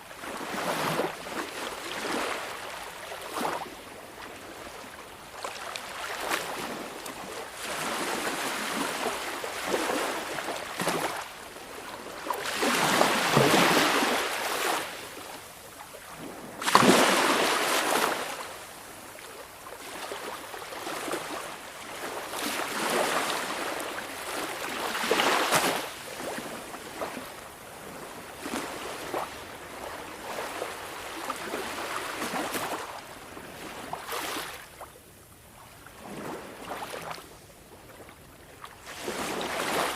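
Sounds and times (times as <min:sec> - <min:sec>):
sea waves washing onto shore: 0:05.4 - 0:34.6.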